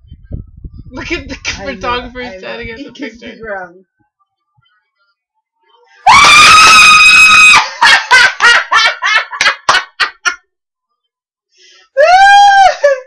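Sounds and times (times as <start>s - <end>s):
woman screaming: 6.0s - 7.7s, 12.0s - 13.0s
woman shrieking: 12.0s - 13.0s.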